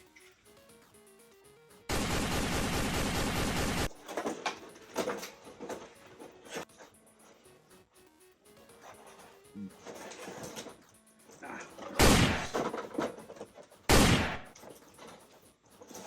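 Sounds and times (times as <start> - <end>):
quiet background music: 0.0 - 16.0
machine-gun fire: 1.9 - 4.0, 12.0 - 12.6, 13.9 - 14.6.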